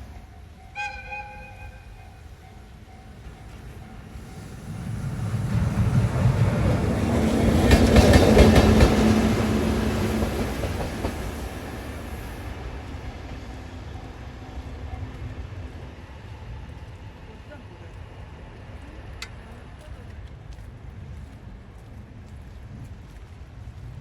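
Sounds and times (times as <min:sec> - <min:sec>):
locomotive hum: 0:00.0 - 0:20.9
locomotive wheels clacking over rail joints: 0:05.3 - 0:15.8.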